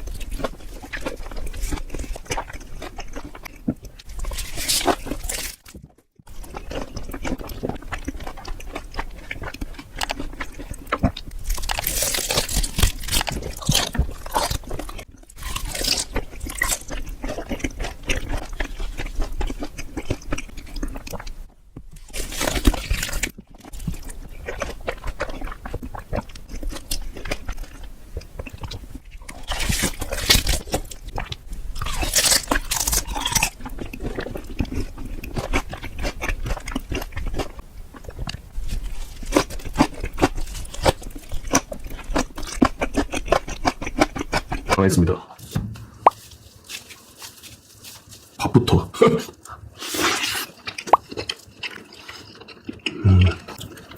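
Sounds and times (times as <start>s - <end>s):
crunchy eating and chewing: 0.0s - 53.9s.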